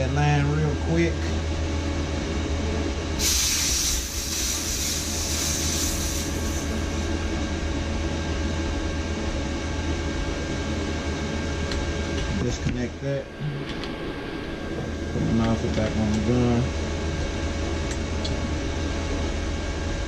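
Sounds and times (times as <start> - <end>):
cooling fan humming: 0.0 - 20.0
high-pressure air hissing: 3.2 - 7.2.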